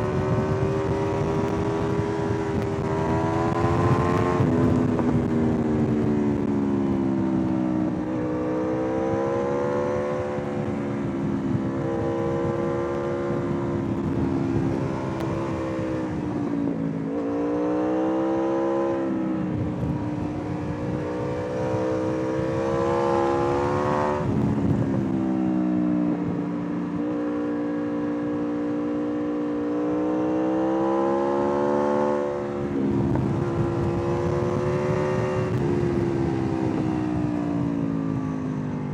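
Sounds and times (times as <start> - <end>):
motorcycle engine revving: 0.0 - 38.9.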